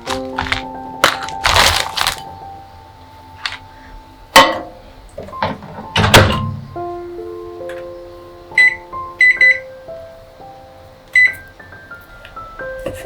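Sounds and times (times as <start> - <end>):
objects knocking and clicking: 0.0 - 2.3
soft piano-like background music: 0.0 - 13.0.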